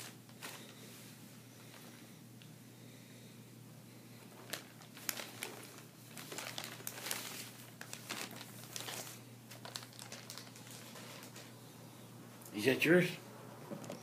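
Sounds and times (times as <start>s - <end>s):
packaging crinkling: 0.0s - 0.8s, 4.2s - 11.6s.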